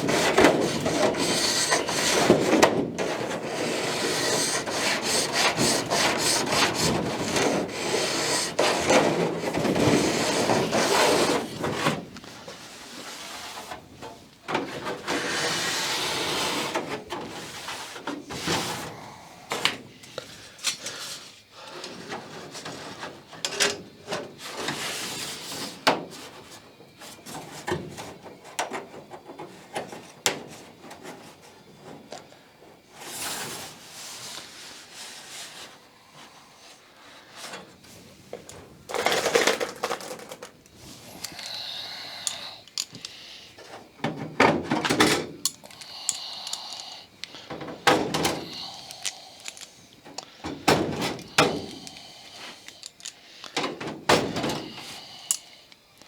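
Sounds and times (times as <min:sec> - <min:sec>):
scraping and rubbing: 0:00.0 - 0:18.9, 0:38.9 - 0:41.4
hand tools set down: 0:43.6 - 0:55.4.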